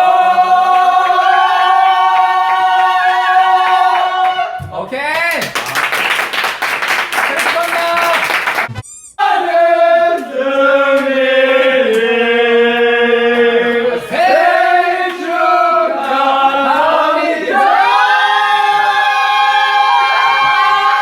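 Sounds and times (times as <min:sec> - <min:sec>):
voices singing in harmony: 0:00.0 - 0:04.6, 0:09.2 - 0:21.0.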